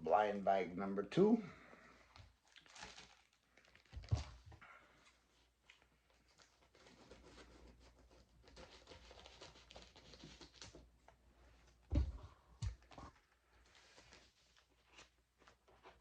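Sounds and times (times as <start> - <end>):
packet crinkling: 2.4 - 4.4.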